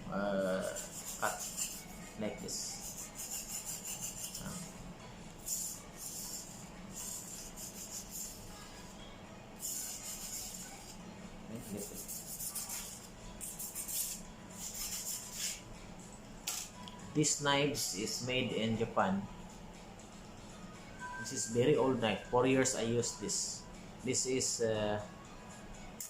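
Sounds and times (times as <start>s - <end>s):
metal file rasping on knife blade: 0.6s - 1.9s, 2.7s - 4.6s.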